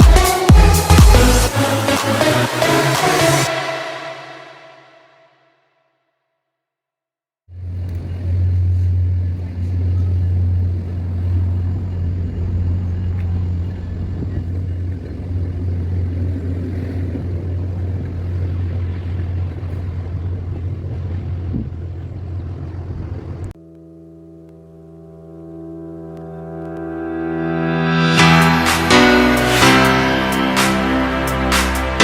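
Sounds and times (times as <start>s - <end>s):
vehicle running low rumble: 7.5s - 23.8s
quiet music with held notes: 23.6s - 32.0s.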